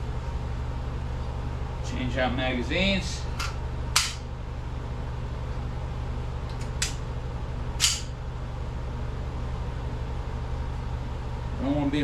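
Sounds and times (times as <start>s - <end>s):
steady low hum: 0.0s - 12.0s
air pistol snaps: 3.4s - 4.2s, 7.8s - 8.1s.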